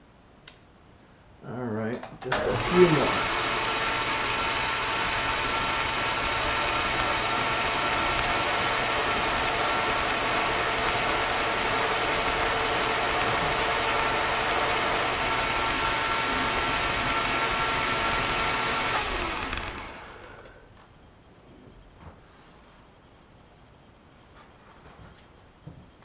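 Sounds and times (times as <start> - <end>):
metal lathe gear whine: 2.4 - 20.6
lathe cutting hiss: 2.5 - 20.5.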